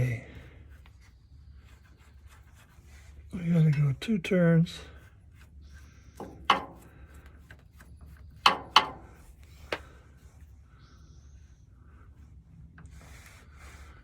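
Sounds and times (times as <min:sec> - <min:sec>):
tools clicking and knocking: 0:06.2 - 0:06.9, 0:08.4 - 0:09.8.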